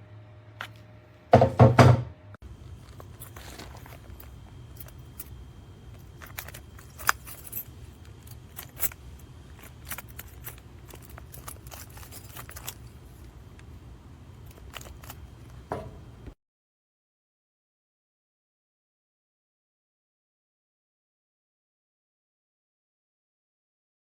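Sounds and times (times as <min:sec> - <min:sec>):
low steady hum: 0:00.0 - 0:16.4
bike lock clicking and rattling: 0:14.5 - 0:16.3.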